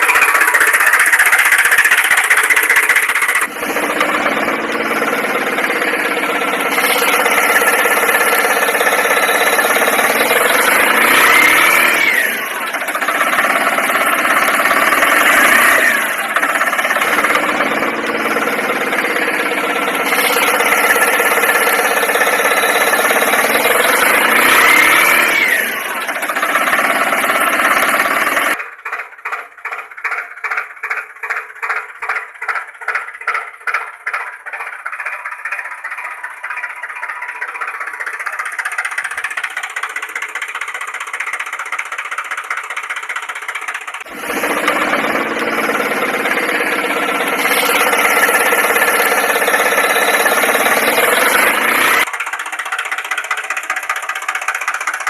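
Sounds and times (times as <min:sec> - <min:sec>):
engine running steadily: 0:00.0 - 0:55.0.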